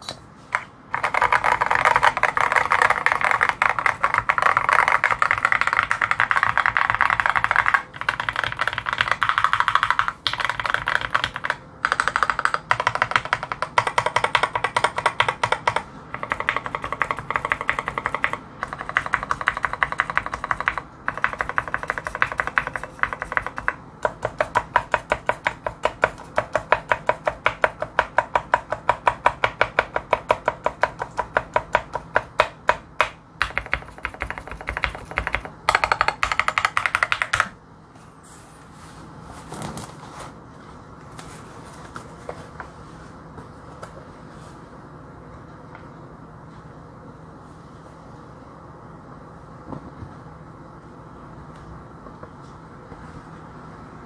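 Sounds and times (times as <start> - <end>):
mechanical keyboard typing: 0.9 - 37.6.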